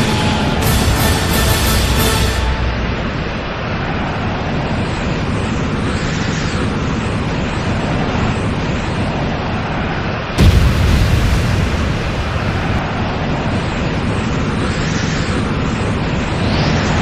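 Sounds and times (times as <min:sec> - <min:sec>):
sudden loud blast: 0:00.0 - 0:03.6, 0:10.4 - 0:12.9
rumbling rush of noise: 0:00.0 - 0:17.0.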